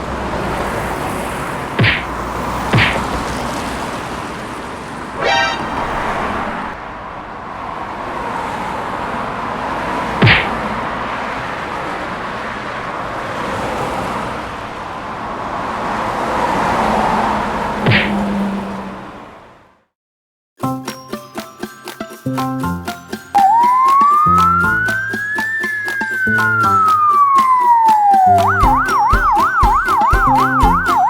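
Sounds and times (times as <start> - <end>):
motor vehicle running: 0.0 - 6.7, 23.4 - 31.0
short horn toot: 5.2 - 6.0.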